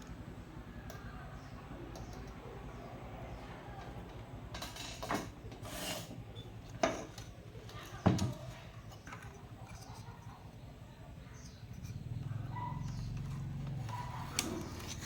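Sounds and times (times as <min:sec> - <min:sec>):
steady low hum: 0:00.0 - 0:15.0
scraping rustle: 0:04.9 - 0:10.4, 0:13.3 - 0:15.0.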